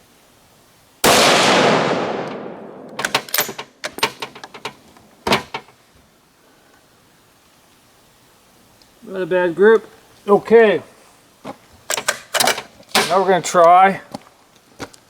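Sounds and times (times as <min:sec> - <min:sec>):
rifle shot with echo: 0:01.0 - 0:03.1
rifle bolt metallic clicks: 0:02.2 - 0:04.8, 0:11.9 - 0:13.2.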